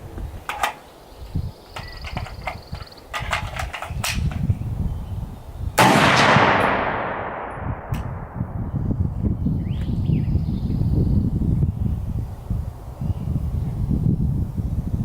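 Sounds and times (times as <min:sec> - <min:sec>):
rifle shot echoing: 0:05.8 - 0:08.4.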